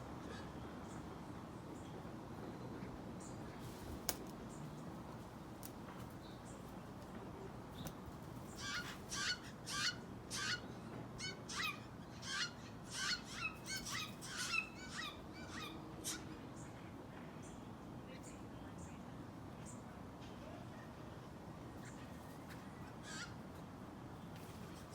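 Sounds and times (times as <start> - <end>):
jay fledgling harsh calls: 8.5 - 10.6, 11.2 - 16.2.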